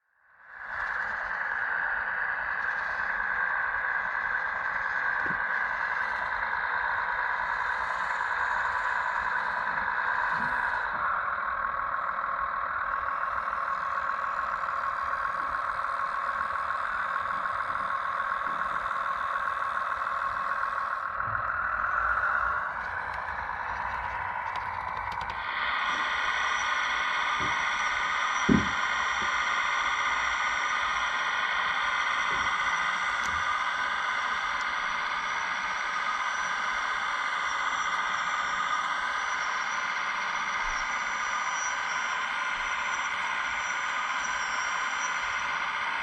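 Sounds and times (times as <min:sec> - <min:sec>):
hydraulic pump whining: 0:07.5 - 0:46.0.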